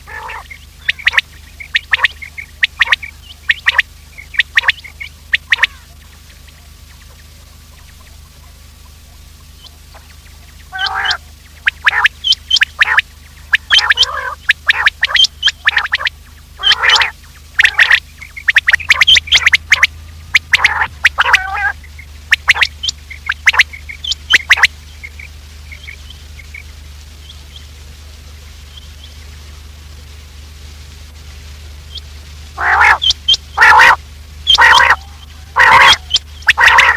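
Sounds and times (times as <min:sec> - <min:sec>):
quail calling: 0:00.0 - 0:07.1, 0:07.7 - 0:26.7, 0:32.6 - 0:36.9
faint high chirps: 0:00.1 - 0:27.8.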